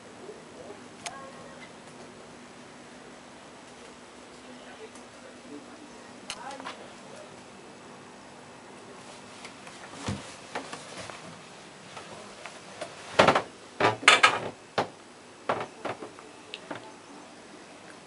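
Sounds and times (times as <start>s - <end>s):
knocks and clatters: 13.2s - 16.9s.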